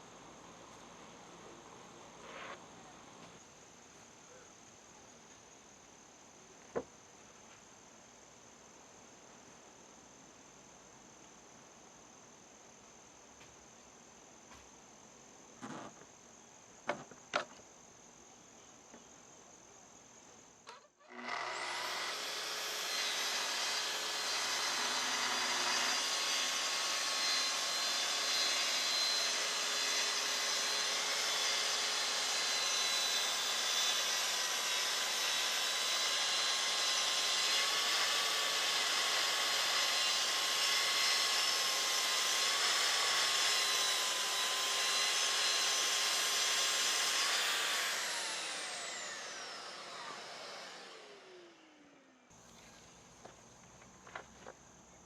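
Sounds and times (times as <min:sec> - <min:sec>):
track saw motor whine: 0:21.1 - 0:52.2.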